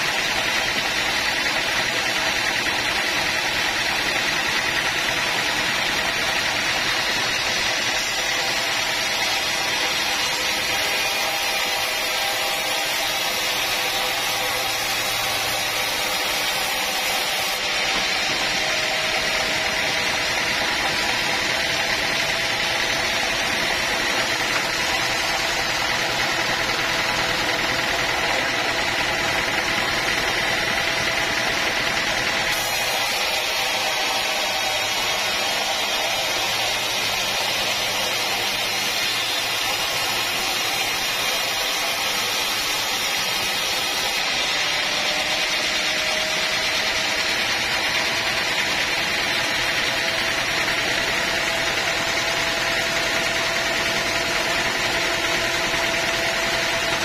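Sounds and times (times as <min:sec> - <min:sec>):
sawmill machinery drone: 0:00.0 - 0:57.0.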